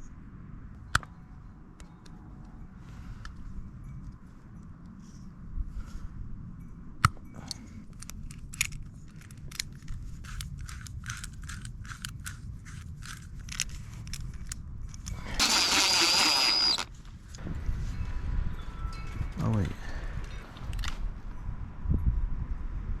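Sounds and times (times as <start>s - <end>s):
loud hiss with high whistle: 15.4s - 16.9s.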